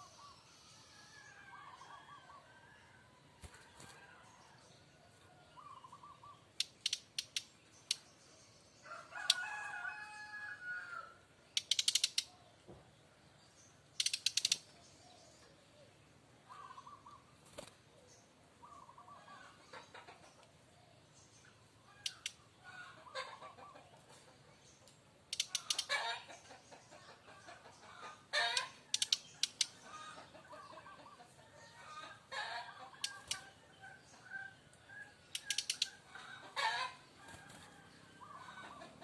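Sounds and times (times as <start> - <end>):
rooster crowing: 8.8 - 11.2.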